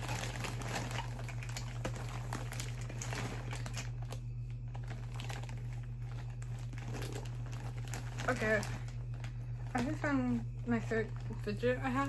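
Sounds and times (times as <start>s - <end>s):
plastic bags crinkling: 0.0s - 12.0s.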